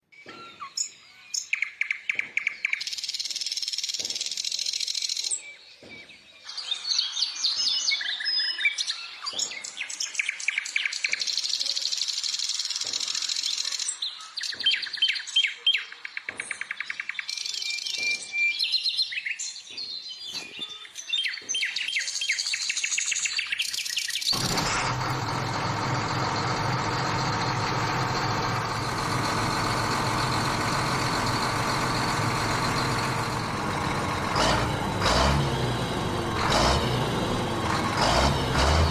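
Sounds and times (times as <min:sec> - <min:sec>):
birds chirping and singing: 0:00.2 - 0:38.9
engine humming: 0:24.4 - 0:38.9.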